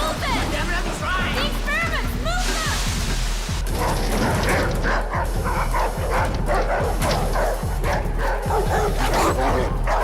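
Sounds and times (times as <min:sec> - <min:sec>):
film score music: 0:00.0 - 0:10.0
dogs barking and yelping: 0:03.6 - 0:10.0.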